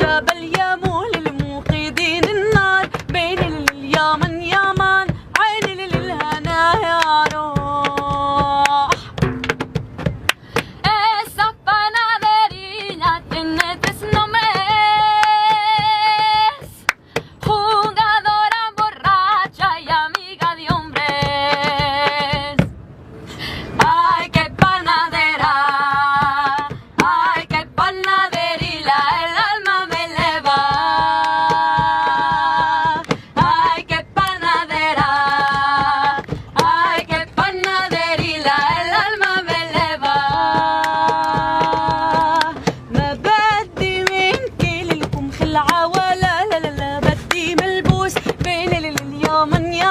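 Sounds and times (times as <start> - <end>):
woman singing a cappella: 0.0 - 9.3, 10.8 - 22.7, 23.8 - 49.9
hand strikes beating rhythm: 0.0 - 23.1, 23.8 - 49.9.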